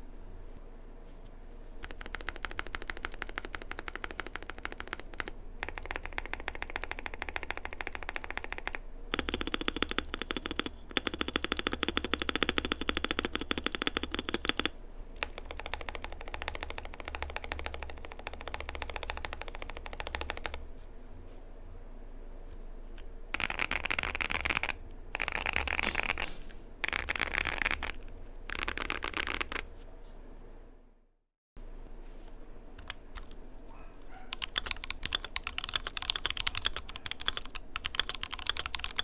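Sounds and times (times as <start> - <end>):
fast mechanical keyboard typing: 1.8 - 20.7, 23.3 - 29.7, 32.8 - 33.4, 34.3 - 39.0.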